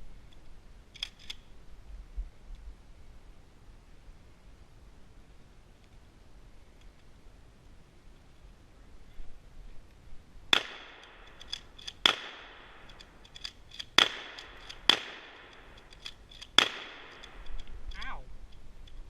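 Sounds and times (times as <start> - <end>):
quiet gun clicks: 0.2 - 1.5, 9.9 - 19.0
bb gun shots: 10.5 - 12.9, 13.9 - 15.6, 16.5 - 17.4.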